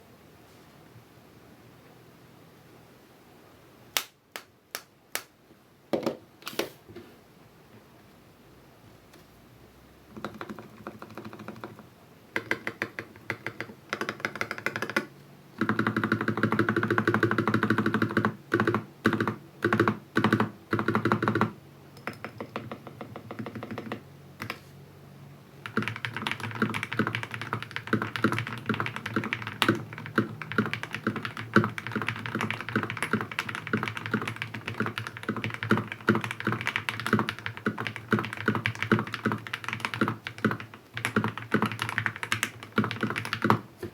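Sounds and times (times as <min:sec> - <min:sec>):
mechanical keyboard typing: 0:10.1 - 0:24.6, 0:25.6 - 0:43.6.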